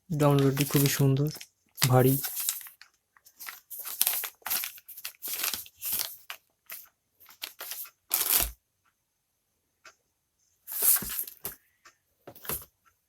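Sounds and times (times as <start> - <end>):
plastic packaging crinkling: 0.1 - 8.5.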